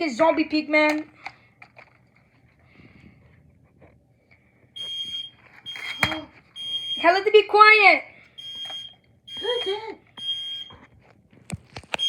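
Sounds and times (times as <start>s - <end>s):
smoke alarm shrill beeping: 4.8s - 7.4s, 8.4s - 10.8s
plastic detectors clicking: 8.4s - 10.7s.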